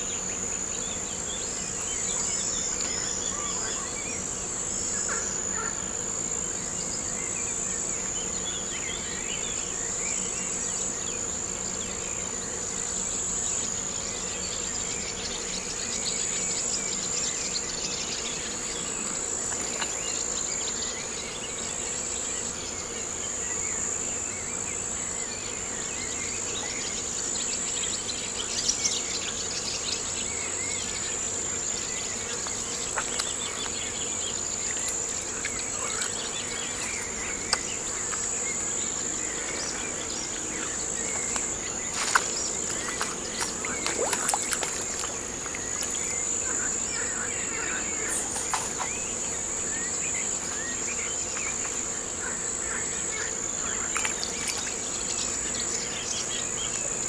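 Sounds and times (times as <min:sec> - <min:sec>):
high-pitched insect chorus: 0:00.0 - 0:57.0.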